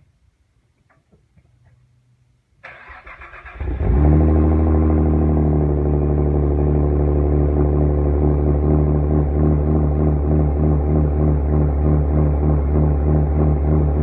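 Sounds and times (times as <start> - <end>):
loud car engine idling: 4.5 - 14.0.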